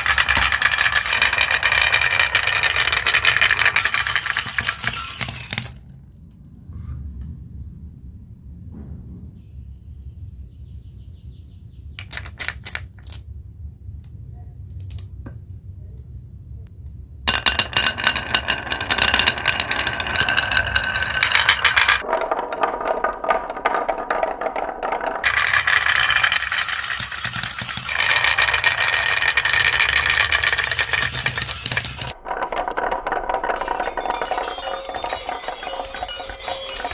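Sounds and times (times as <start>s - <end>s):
glass marbles rattling down track: 0.0s - 5.8s, 17.3s - 36.9s.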